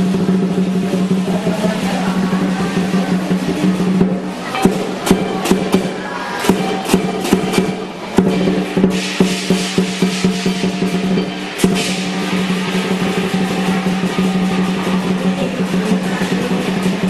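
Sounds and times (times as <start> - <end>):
big drum strokes: 0.0 - 17.0
cymbals clashing: 0.0 - 17.0
metallic ring: 3.6 - 15.5.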